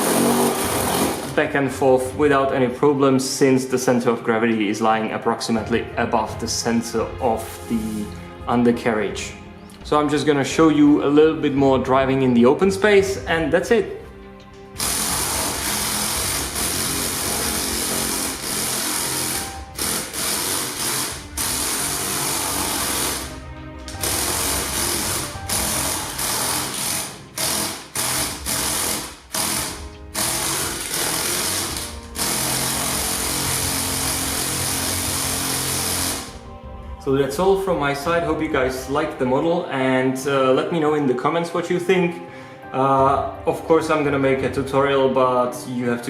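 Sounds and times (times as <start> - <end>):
toy track motors whirring: 0.0 - 1.4, 14.8 - 23.3, 24.0 - 36.3.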